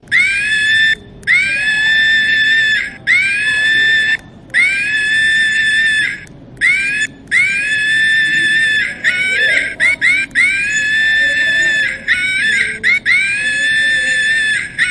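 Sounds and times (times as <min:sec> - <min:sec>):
chimpanzee screaming: 0:00.1 - 0:14.9.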